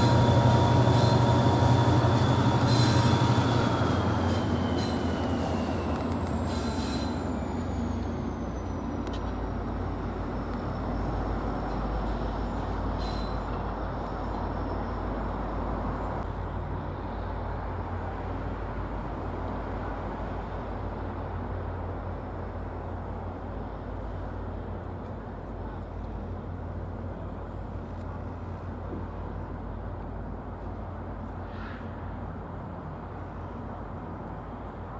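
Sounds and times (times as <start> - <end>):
train wheel squeal: 0.0 - 16.2
train rumbling: 0.0 - 34.9.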